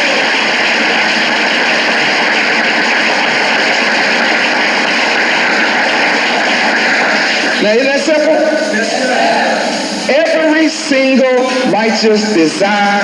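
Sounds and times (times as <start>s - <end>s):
audience applauding and cheering: 0.0s - 10.2s
person preaching: 7.6s - 13.0s.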